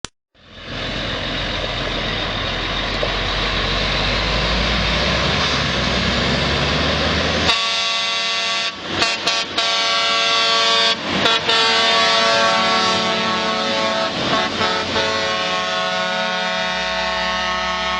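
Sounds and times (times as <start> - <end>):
truck air horn blasting: 7.5 - 17.9.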